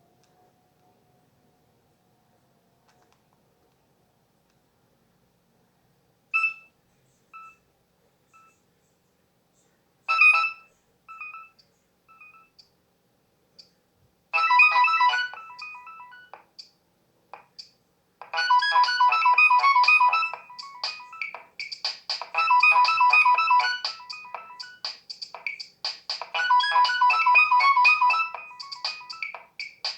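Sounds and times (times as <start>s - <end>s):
mobile phone ringtone melody: 10.1s - 11.6s, 14.4s - 16.4s, 18.2s - 25.7s, 26.3s - 29.5s.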